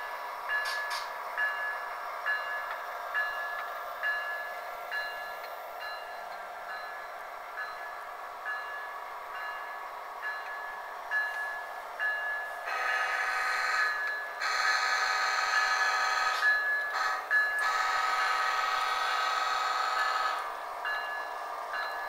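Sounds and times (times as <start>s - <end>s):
locomotive bell ringing: 0.0s - 22.0s
locomotive horn blasts: 12.7s - 20.4s.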